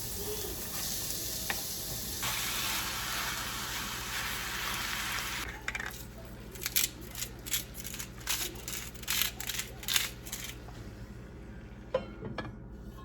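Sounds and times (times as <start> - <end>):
food sizzling in a frying pan: 0.0 - 5.5.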